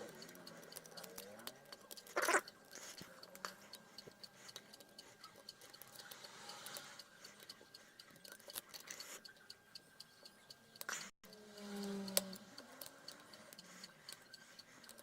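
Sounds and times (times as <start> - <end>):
faint quick ticking: 0.0 - 15.0.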